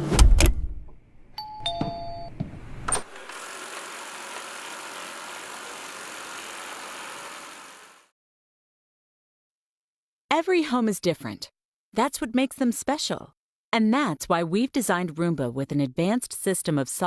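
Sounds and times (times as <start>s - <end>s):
electronic two-tone chime: 1.4s - 2.4s.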